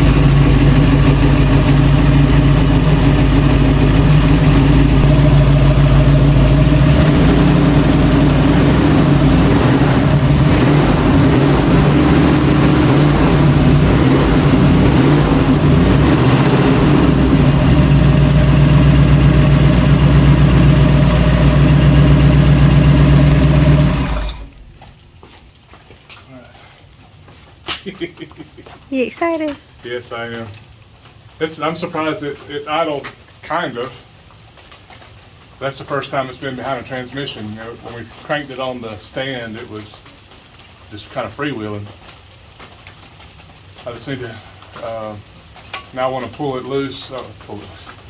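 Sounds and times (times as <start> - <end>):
car engine idling unevenly: 0.0 - 24.9.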